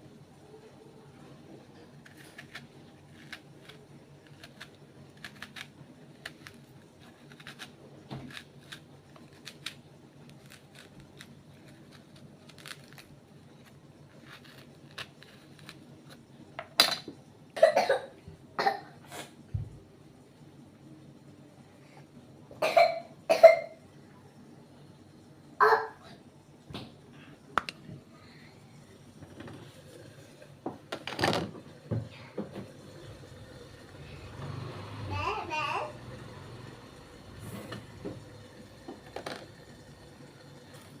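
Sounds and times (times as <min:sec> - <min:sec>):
faint steady hum: 0:00.0 - 0:41.0
person coughing: 0:17.6 - 0:19.0, 0:22.6 - 0:23.7.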